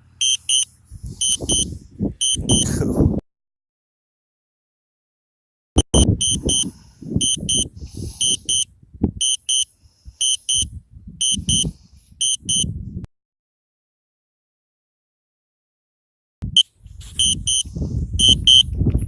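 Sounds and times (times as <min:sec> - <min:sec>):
wind rumbling on microphone: 0:00.0 - 0:03.2, 0:05.8 - 0:13.1, 0:16.4 - 0:19.0
electronic warning beeps: 0:00.2 - 0:02.7, 0:05.8 - 0:12.7, 0:17.2 - 0:17.6, 0:18.2 - 0:18.6.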